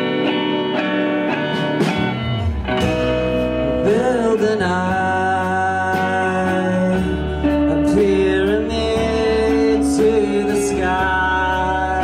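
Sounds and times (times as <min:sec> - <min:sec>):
guitars playing held chords: 0:00.0 - 0:12.0
person singing: 0:02.8 - 0:12.0.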